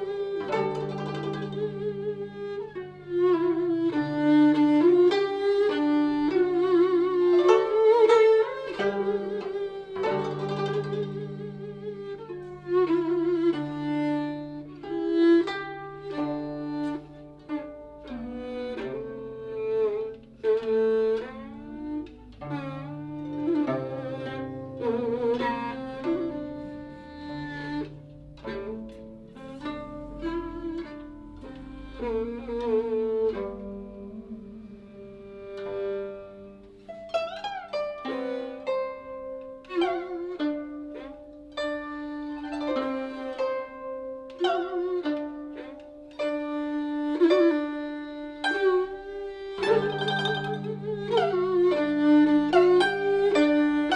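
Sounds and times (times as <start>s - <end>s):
bowed fiddle melody: 0.0s - 53.9s
plucked zither notes: 0.0s - 53.9s.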